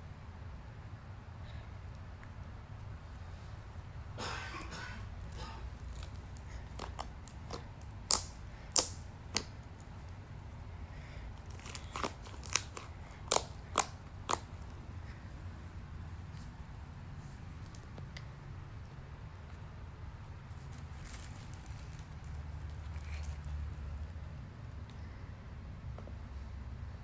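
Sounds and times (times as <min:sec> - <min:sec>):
slime squeezing: 0:05.6 - 0:10.6, 0:11.3 - 0:14.8
slime popping and clicking: 0:05.9 - 0:09.9, 0:11.5 - 0:14.5.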